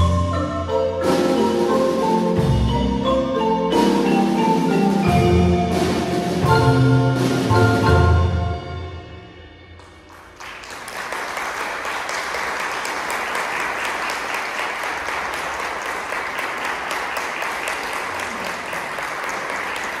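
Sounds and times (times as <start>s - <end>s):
music: 0.0s - 10.2s
audience applause: 9.8s - 20.0s.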